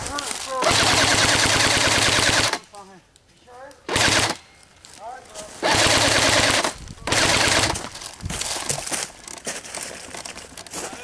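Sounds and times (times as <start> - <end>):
crunching and rustling: 0.0 - 0.8, 6.8 - 11.0
airsoft rifle firing bursts: 0.6 - 2.6, 3.9 - 4.4, 5.6 - 7.9.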